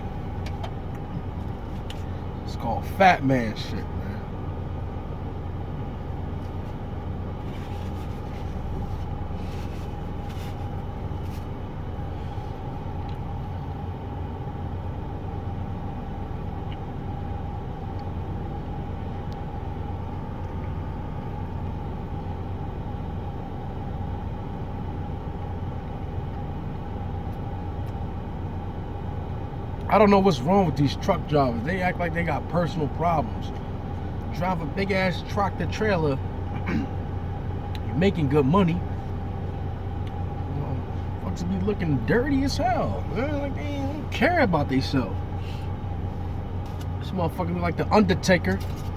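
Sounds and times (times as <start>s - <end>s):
truck engine idling: 0.0s - 48.9s
faint rustles: 6.4s - 12.7s, 48.6s - 48.9s.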